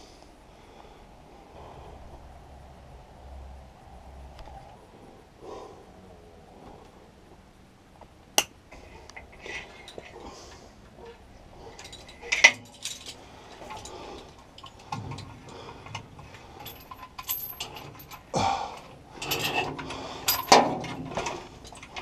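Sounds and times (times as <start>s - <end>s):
metallic clinks and rattles: 11.0s - 22.0s.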